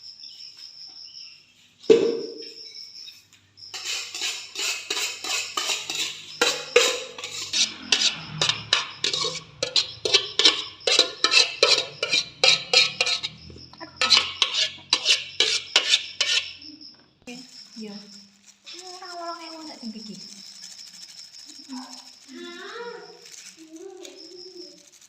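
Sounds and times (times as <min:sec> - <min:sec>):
utensil scraping dishware: 0:03.7 - 0:13.4, 0:14.0 - 0:16.6.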